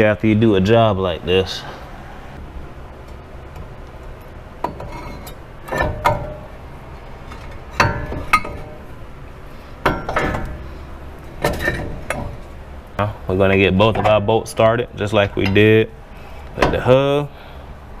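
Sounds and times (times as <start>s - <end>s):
metal parts clinking: 9.8s - 12.5s.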